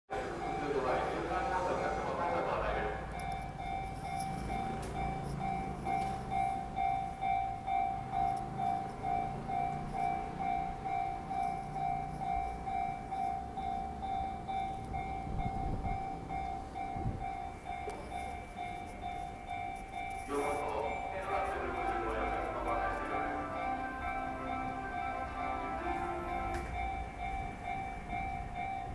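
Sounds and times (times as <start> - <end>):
level-crossing electronic bell ringing: 0.1 - 28.9
low rumble of a train: 0.1 - 28.9.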